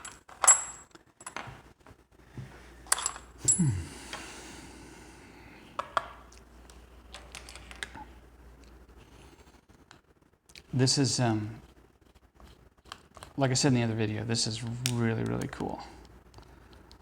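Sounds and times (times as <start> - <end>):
metal lock parts clinking: 0.0 - 1.5, 2.9 - 3.6.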